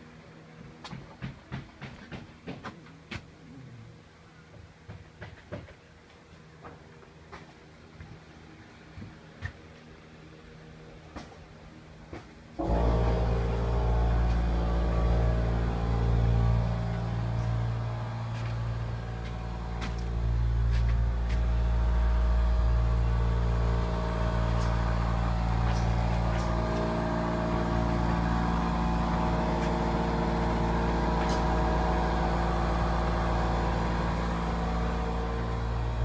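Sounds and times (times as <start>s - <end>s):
motor humming: 12.6s - 36.0s.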